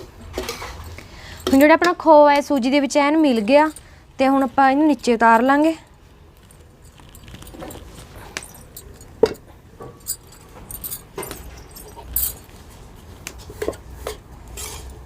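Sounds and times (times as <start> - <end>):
metal cooking utensils clinking: 0.2 - 5.6.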